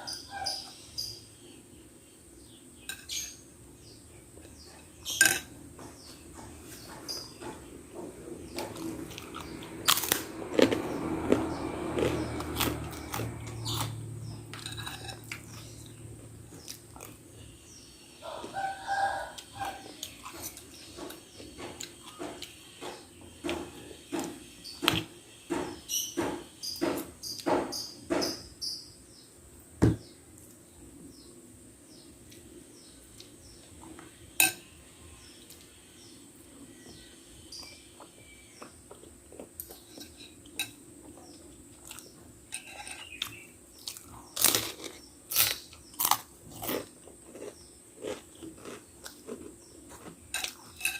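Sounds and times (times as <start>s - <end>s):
person chewing: 8.5s - 17.3s, 43.0s - 50.9s.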